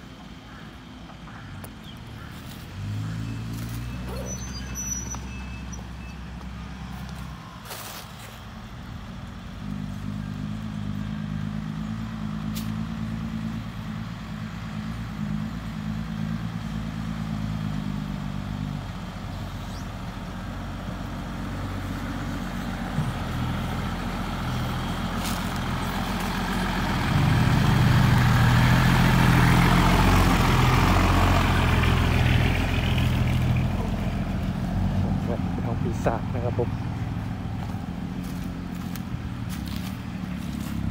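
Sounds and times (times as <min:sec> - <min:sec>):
diesel truck engine under load: 0:00.0 - 0:40.9.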